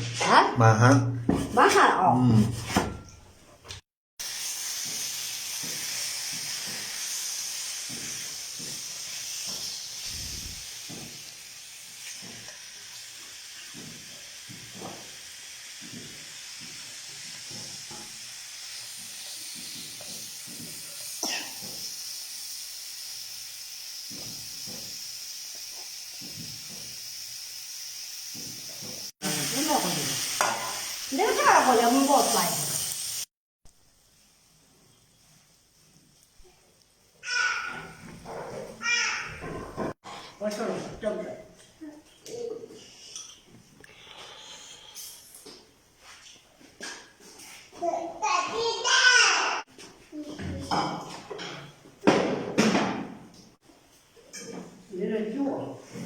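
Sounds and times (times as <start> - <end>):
food sizzling in a wok: 4.2 - 38.1.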